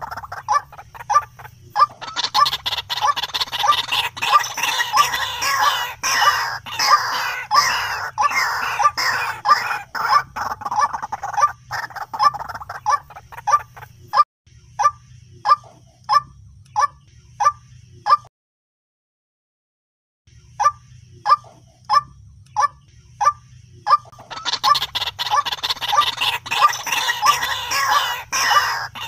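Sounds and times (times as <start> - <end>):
harsh bird calls: 0.0 - 14.2, 20.6 - 29.0
low steady hum: 20.3 - 29.0.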